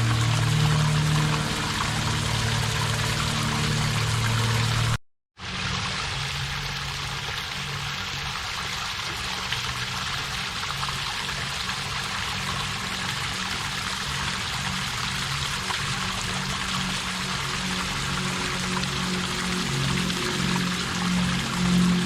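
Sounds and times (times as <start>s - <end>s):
waterfall rushing: 0.0s - 5.0s, 16.1s - 22.0s.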